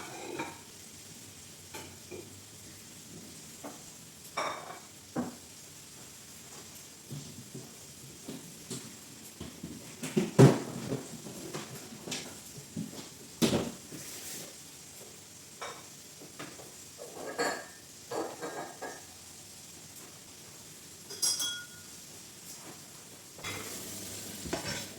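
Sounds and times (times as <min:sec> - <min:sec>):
dishes and cutlery clattering: 0:17.0 - 0:19.0, 0:21.1 - 0:21.9, 0:23.4 - 0:24.9
ringing clinks: 0:21.1 - 0:21.9.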